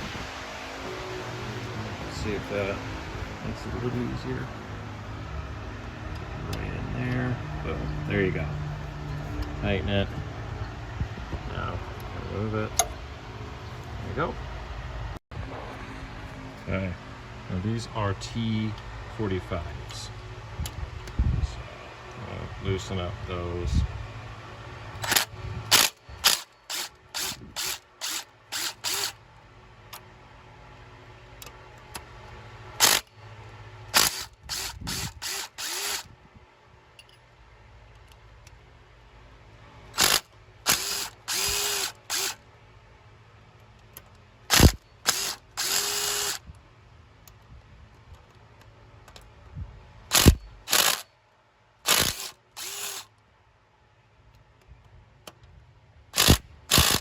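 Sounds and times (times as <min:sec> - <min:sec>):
power tool motor whining: 0:25.0 - 0:29.2, 0:32.8 - 0:33.1, 0:33.9 - 0:36.1, 0:40.0 - 0:42.4, 0:44.5 - 0:46.4, 0:50.1 - 0:51.1, 0:51.9 - 0:53.1, 0:56.2 - 0:57.0.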